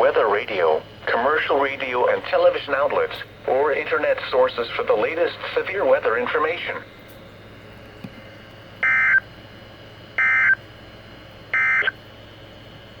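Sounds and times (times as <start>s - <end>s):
faint radio hiss: 0.0s - 6.9s.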